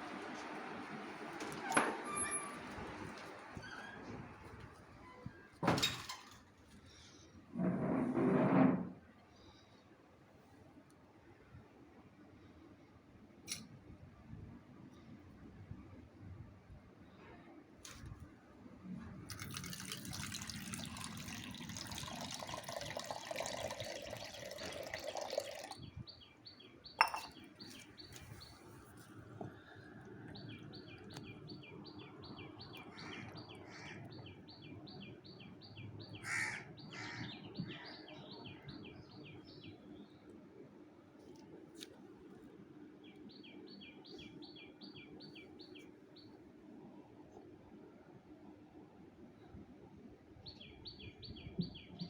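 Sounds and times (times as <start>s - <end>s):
water running: 19.3s - 25.8s.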